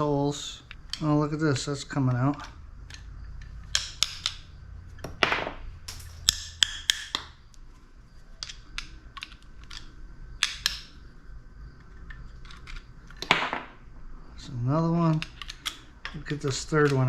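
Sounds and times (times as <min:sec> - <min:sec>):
metal tools clicking and clinking: 0:00.5 - 0:07.2, 0:15.0 - 0:17.0.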